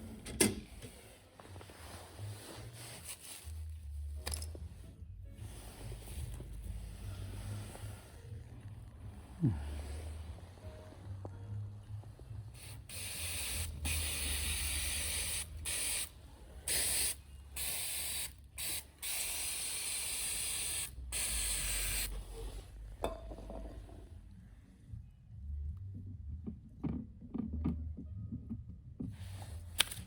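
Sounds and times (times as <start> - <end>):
aerosol can spraying: 12.6 - 16.1, 16.7 - 22.1.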